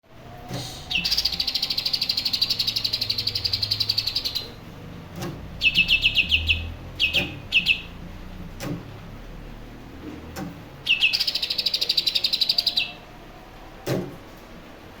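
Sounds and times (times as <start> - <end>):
bird chirping: 0.9 - 4.6, 5.6 - 8.0, 10.8 - 13.1
bird trilling: 0.9 - 4.6, 5.6 - 7.9, 10.9 - 13.0.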